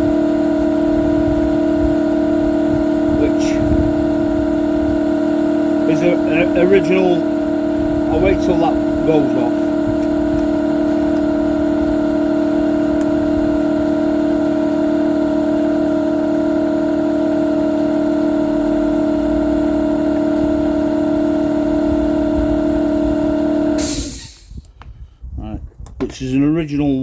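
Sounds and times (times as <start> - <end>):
air compressor humming: 0.0 - 25.1
short burst of air hiss: 23.8 - 24.7.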